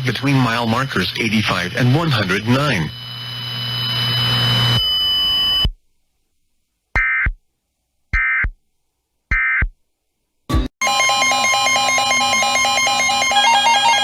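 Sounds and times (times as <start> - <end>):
steady high tone with hum: 0.0 - 5.7.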